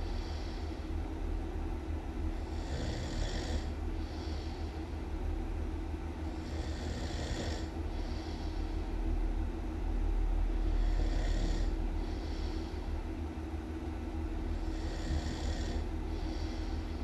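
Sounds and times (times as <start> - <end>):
constant low rumble: 0.0 - 17.0
person snoring loudly: 2.5 - 3.7, 6.4 - 7.7, 10.8 - 11.7, 14.7 - 15.8.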